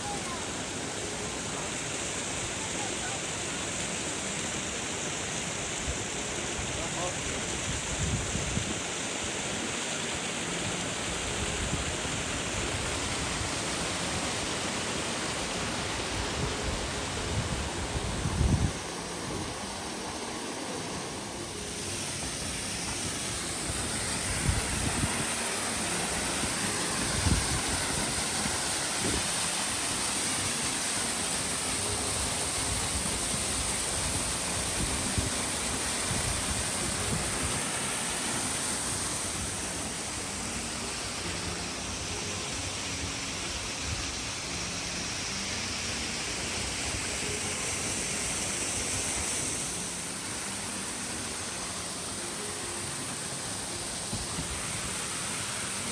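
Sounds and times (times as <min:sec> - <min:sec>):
waterfall rushing: 0:00.0 - 0:55.9.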